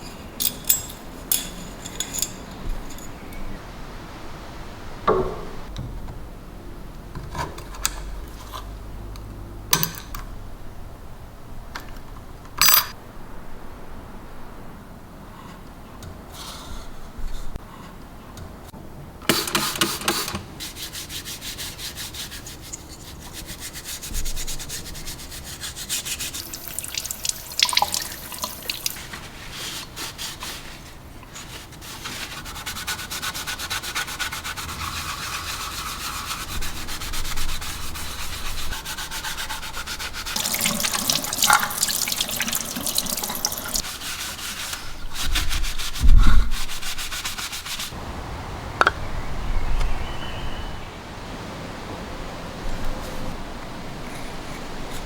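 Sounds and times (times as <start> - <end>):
abrasive rubbing strokes: 20.6 - 48.0.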